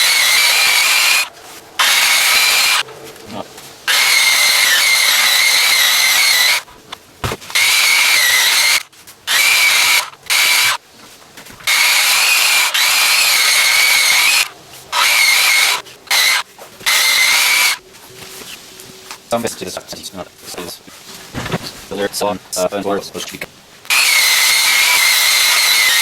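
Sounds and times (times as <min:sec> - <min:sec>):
drum sander motor whining: 0:00.0 - 0:02.9, 0:03.8 - 0:06.7, 0:07.5 - 0:10.8, 0:11.6 - 0:17.8.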